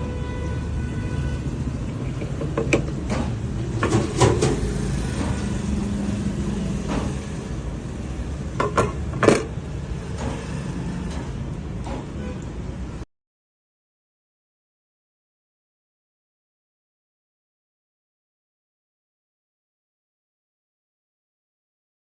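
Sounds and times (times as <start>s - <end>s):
hard knocks and clacks: 2.2s - 5.4s.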